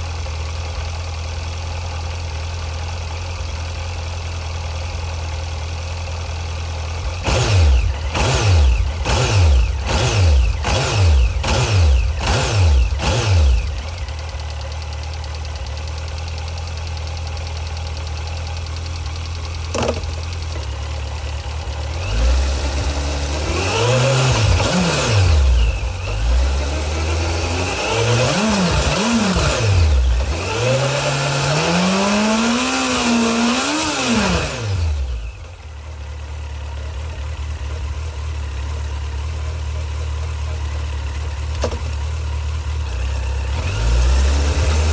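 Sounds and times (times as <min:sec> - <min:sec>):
motorcycle engine idling and revving: 0:00.0 - 0:44.9.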